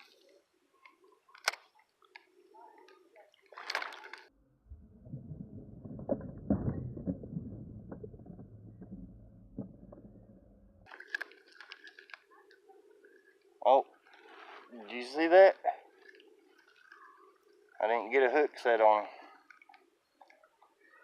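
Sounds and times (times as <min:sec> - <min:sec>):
water splashing around kayak: 0:03.4 - 0:12.3
microphone rubbing rumble: 0:04.6 - 0:10.8.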